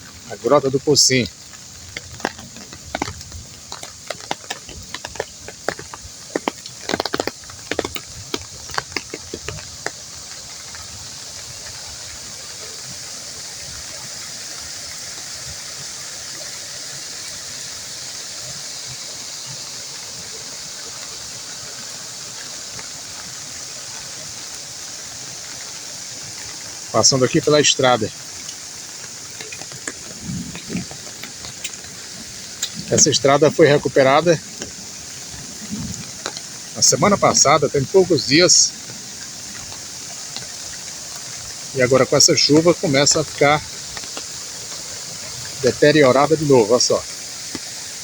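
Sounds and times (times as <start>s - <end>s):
water rushing down gully: 0.0s - 48.0s
sharp taps and knocks: 1.9s - 10.0s.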